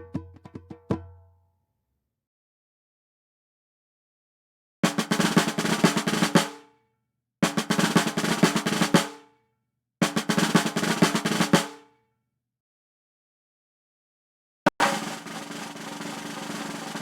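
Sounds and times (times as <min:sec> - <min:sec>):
drum rolls with accented hit: 0:04.8 - 0:06.5, 0:14.7 - 0:17.0.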